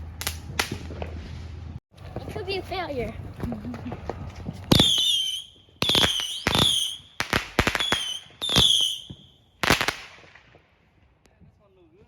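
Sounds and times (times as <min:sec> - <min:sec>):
fireworks bangs: 0:00.0 - 0:02.4, 0:03.8 - 0:10.9
fireworks whistling: 0:04.7 - 0:10.1.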